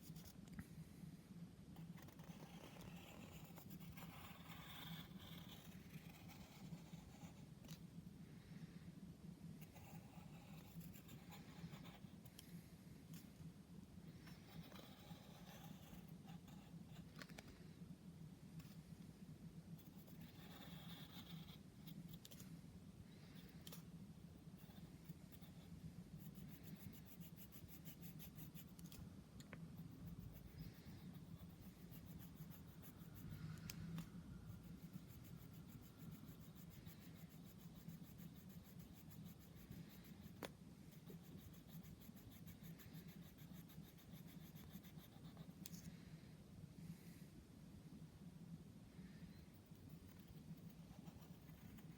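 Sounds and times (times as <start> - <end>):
drawing tool scratching on paper: 1.8 - 7.8, 9.6 - 12.4, 14.1 - 17.2, 19.8 - 22.4, 23.2 - 29.0, 29.8 - 45.9, 49.3 - 51.9.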